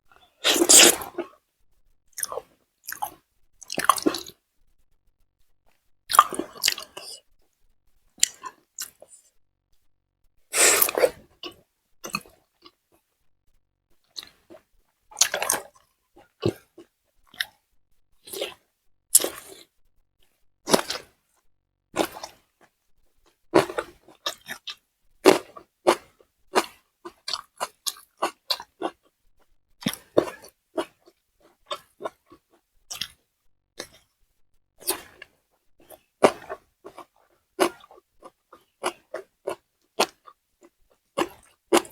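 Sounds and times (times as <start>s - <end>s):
chewing and crunching food: 0.1s - 4.7s, 5.4s - 9.9s, 10.6s - 41.9s
mouth smacks: 0.4s - 1.2s, 10.5s - 11.2s.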